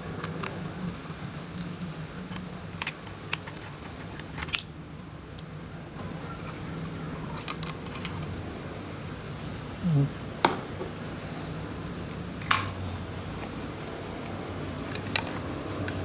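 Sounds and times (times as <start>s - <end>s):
clicks of small hard parts: 7.2s - 8.3s.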